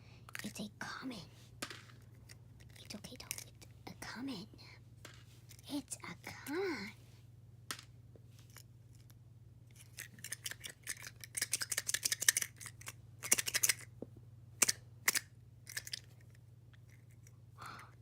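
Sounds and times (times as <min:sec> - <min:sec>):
faint steady hum: 0:00.0 - 0:18.0
toy egg shell cracking: 0:00.3 - 0:00.6, 0:01.6 - 0:03.7, 0:08.5 - 0:13.9, 0:14.6 - 0:18.0.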